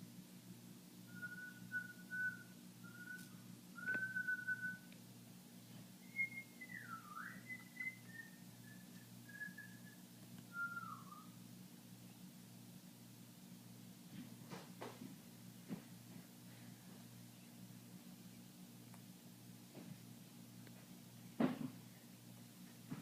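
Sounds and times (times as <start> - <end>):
low steady hum: 0.0 - 23.0
person whistling a tune: 1.1 - 4.9, 6.0 - 11.3.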